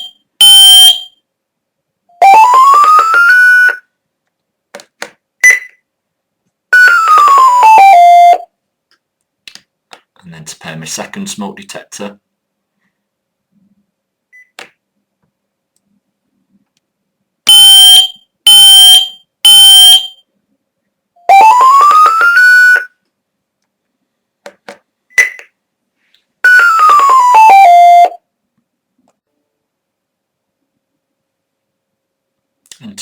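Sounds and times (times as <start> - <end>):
short loud beeps: 0.0 - 1.1, 17.5 - 20.2
electronic tones rising in pitch: 17.5 - 20.0
electronic tones falling in pitch: 17.5 - 20.1, 21.3 - 22.9, 26.5 - 28.2.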